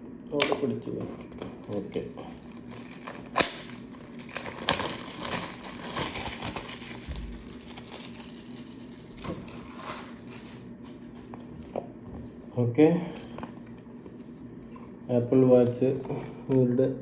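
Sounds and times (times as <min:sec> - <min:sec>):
packaging crinkling and tearing: 0:01.4 - 0:11.4.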